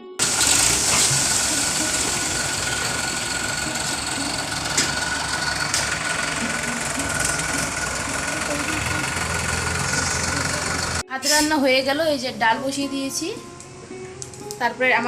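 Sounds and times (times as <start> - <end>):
diesel engine running: 0.0 - 11.1
high whine: 0.2 - 11.0.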